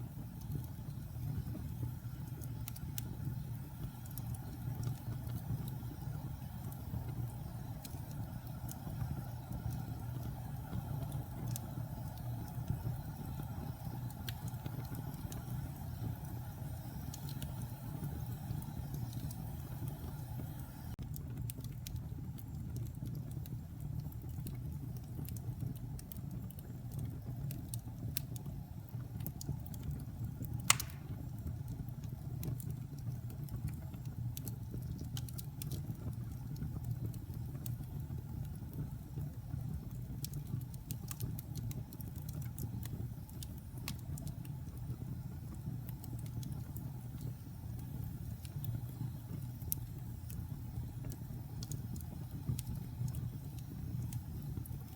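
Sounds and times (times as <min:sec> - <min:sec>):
fire crackling: 0:00.0 - 0:54.9
fire rumbling: 0:00.0 - 0:54.9
log fire pop: 0:29.3 - 0:31.7.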